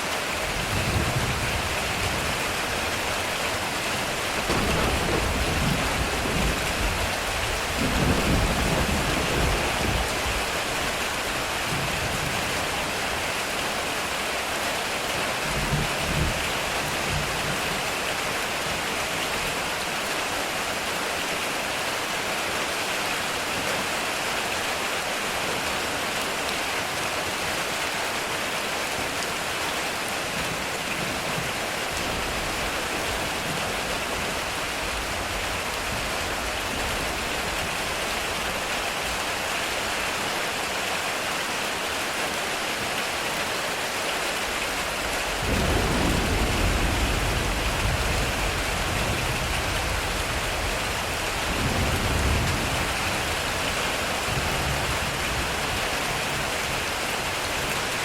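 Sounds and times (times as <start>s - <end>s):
heavy rain on a metal roof: 0.0s - 58.0s
distant thunder rumbles: 0.5s - 11.0s, 44.9s - 55.8s.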